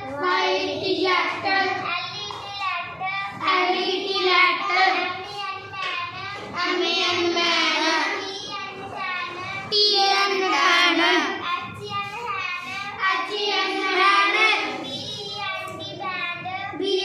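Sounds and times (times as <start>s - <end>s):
children chanting: 0.0s - 17.0s.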